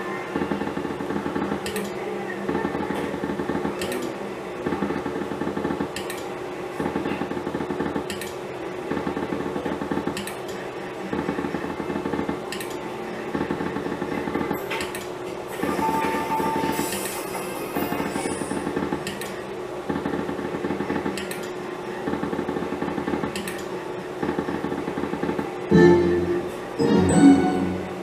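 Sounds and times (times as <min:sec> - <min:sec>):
slot machine sharp click: 0:25.7 - 0:28.0.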